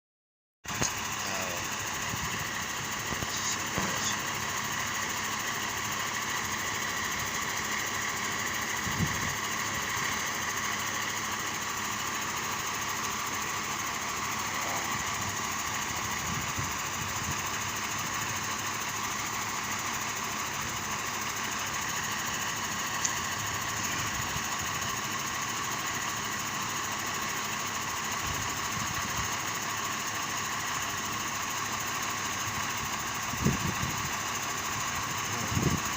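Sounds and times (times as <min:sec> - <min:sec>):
fire truck engine running: 0:00.6 - 0:35.9
sharp click: 0:00.7 - 0:01.0.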